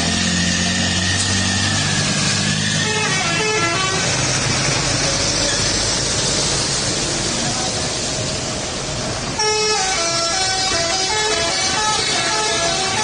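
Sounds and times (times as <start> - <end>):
vehicle engines rumbling: 0.0 - 13.0
held horn tones: 2.6 - 4.2, 9.4 - 13.0
multi-tone truck air horn: 2.6 - 4.2, 9.4 - 13.0.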